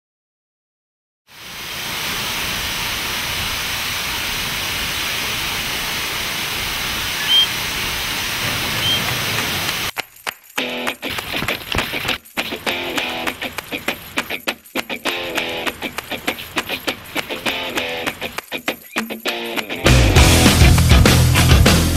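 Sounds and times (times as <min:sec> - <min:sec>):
steady rushing hiss: 0:01.3 - 0:21.4
short high chirps: 0:07.1 - 0:07.6, 0:08.6 - 0:09.2
guitar music: 0:10.6 - 0:21.9.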